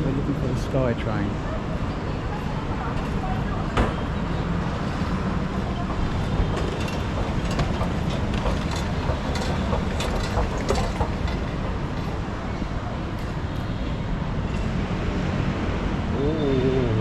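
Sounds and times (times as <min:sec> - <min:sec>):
rail station rumble: 0:00.0 - 0:17.0
clicks and clatter: 0:05.8 - 0:12.2.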